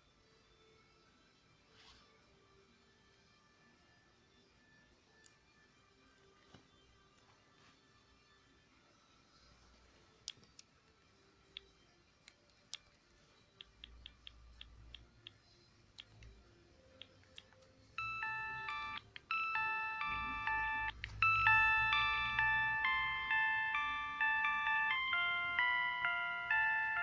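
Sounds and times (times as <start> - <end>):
beeping phone ringtone melody: 18.0 - 27.0.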